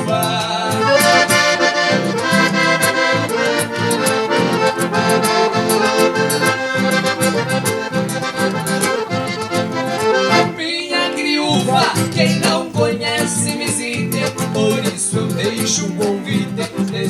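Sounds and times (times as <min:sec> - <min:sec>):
bass line: 0:00.0 - 0:10.6
accordion melody: 0:00.0 - 0:17.0.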